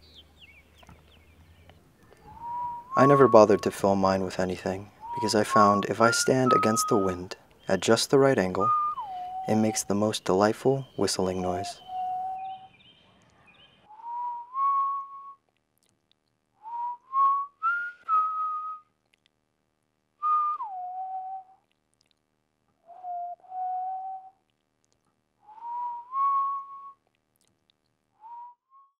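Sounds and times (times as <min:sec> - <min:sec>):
wind whistling through hole: 0:02.2 - 0:03.8.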